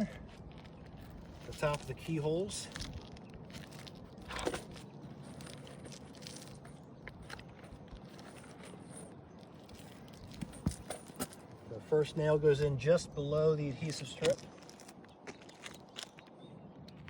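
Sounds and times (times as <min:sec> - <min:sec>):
shingles scraping and crunching: 0:00.3 - 0:11.6.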